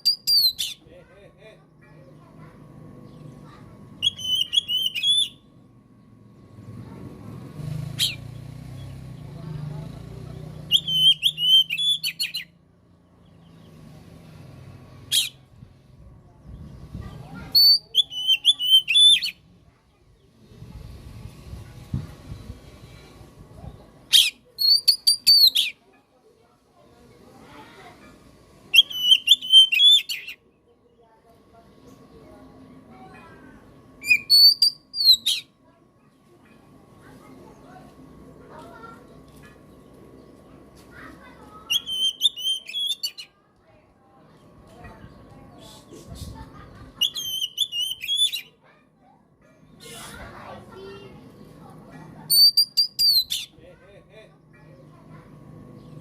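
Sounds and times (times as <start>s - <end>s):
bird singing whistled notes: 0.0s - 0.8s, 4.0s - 5.4s, 10.7s - 12.5s, 17.6s - 19.4s, 24.2s - 25.8s, 28.8s - 30.4s, 34.0s - 35.5s, 41.7s - 43.3s, 47.0s - 48.5s, 52.3s - 53.5s
low background hum: 0.0s - 56.0s.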